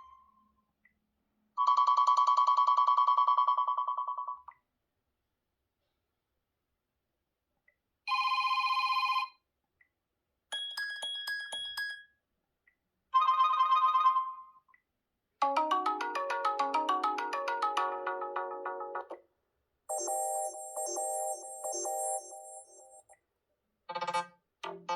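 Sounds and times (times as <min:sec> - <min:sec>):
phone ringtones: 0:19.9 - 0:23.1.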